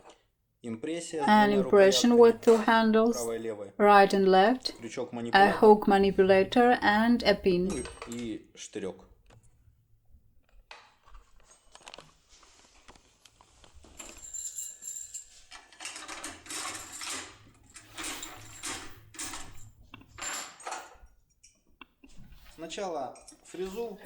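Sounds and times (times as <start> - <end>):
metal tools clinking and scraping: 6.0 - 8.4, 13.8 - 21.6, 23.1 - 24.0.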